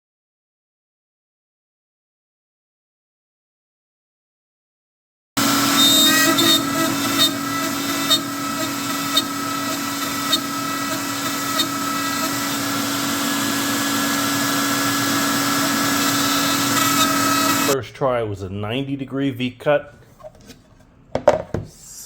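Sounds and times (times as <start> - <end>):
router spindle whine cutting wood: 5.4 - 17.8.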